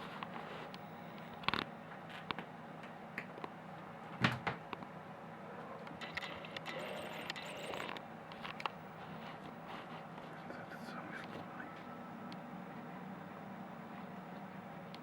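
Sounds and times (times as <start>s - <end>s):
steady low hum: 0.0s - 15.0s
kittens knocking and thumping: 4.2s - 4.7s.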